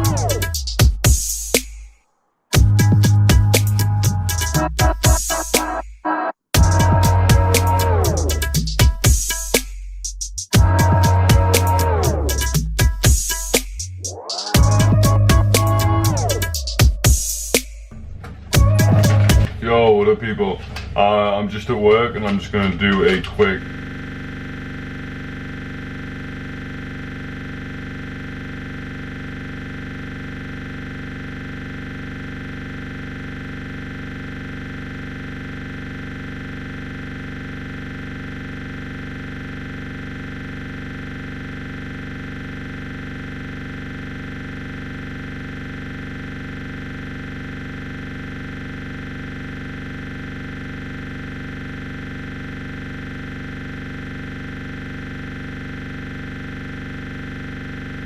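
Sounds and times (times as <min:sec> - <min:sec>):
drone of fixed tones: 0:00.0 - 0:00.5, 0:03.8 - 0:08.6, 0:10.6 - 0:12.4, 0:14.1 - 0:17.9.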